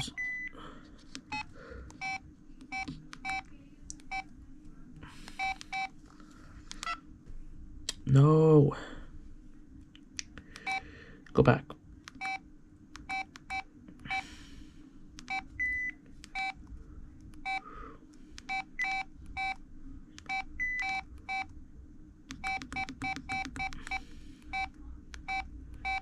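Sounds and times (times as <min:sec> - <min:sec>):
phone keypad beeps: 0:01.2 - 0:03.5, 0:04.1 - 0:04.3, 0:05.4 - 0:05.9, 0:10.6 - 0:10.8, 0:12.2 - 0:12.4, 0:13.0 - 0:14.2, 0:15.2 - 0:16.6, 0:18.4 - 0:19.6, 0:20.2 - 0:21.5, 0:22.4 - 0:24.0, 0:24.6 - 0:26.0.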